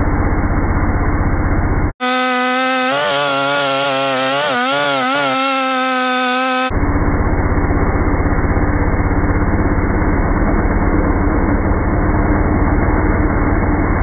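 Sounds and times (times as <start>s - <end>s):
muffled low pulsing engine: 0.0s - 2.0s, 6.5s - 14.0s
chainsaw whining at high speed: 2.0s - 6.7s.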